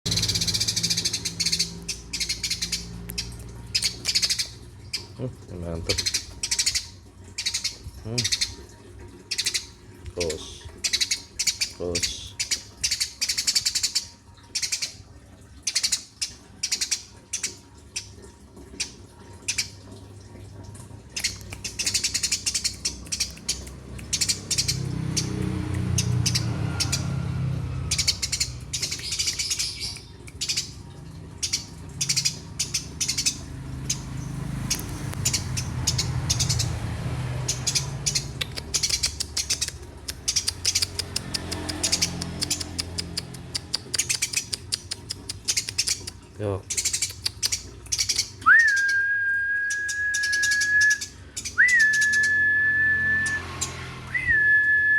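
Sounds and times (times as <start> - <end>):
sparrow chirping: 0.1 - 5.2, 5.8 - 8.6, 9.3 - 15.0, 21.2 - 27.1, 27.9 - 30.8, 31.4 - 46.1, 46.7 - 48.9.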